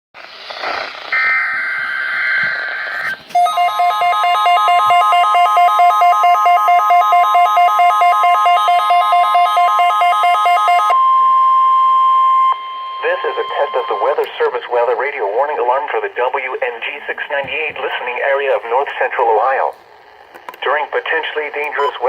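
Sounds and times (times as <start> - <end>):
steady high alarm tone: 1.1 - 14.6.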